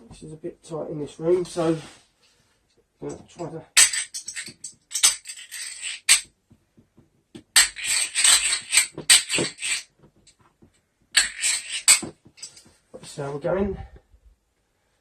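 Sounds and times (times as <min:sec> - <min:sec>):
hand drill whirring and clicking: 0:07.6 - 0:09.9, 0:11.2 - 0:12.1.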